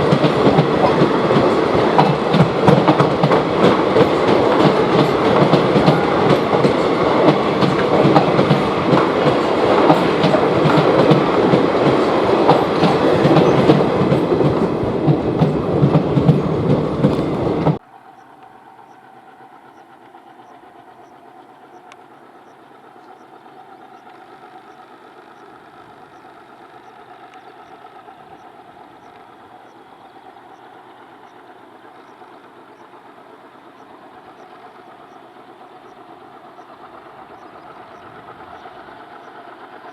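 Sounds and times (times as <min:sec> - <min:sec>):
train wheels clattering over rail joints: 0:00.0 - 0:17.8.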